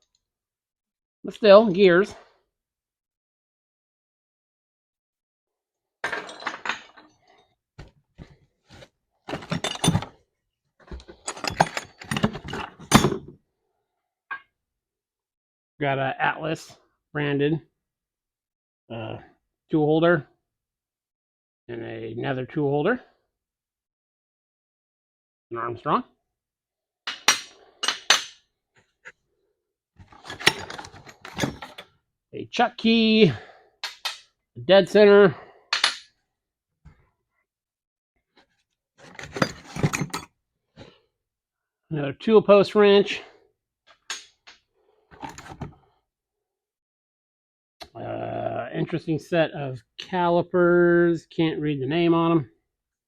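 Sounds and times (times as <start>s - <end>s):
metal parts rattling: 9.3s - 10.1s, 10.9s - 13.3s, 30.1s - 31.8s, 39.0s - 40.3s.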